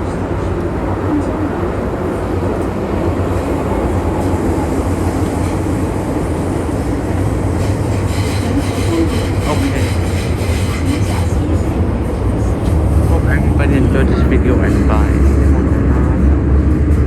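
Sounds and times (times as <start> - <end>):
metro train wheels rumbling: 0.0 - 17.0.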